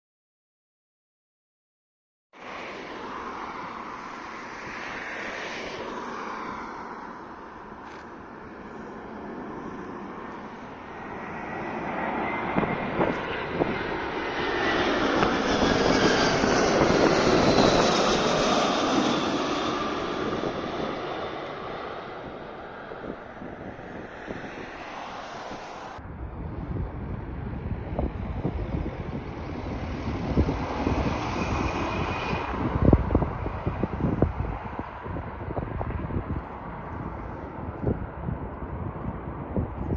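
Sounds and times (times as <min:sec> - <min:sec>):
jet engines flying past: 0:02.4 - 0:39.9.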